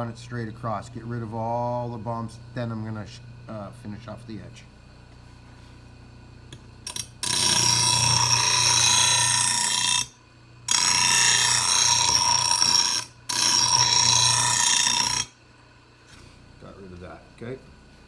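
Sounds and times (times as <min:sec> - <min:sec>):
grinder grinding steel blade: 0:06.9 - 0:15.4.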